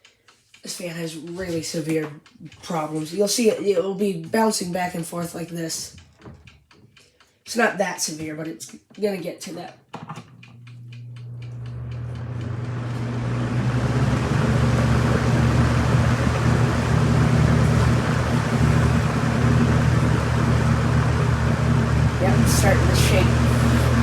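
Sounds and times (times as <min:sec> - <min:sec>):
box fan switch clicks: 0:10.1 - 0:13.1
box fan motor humming: 0:10.2 - 0:24.0.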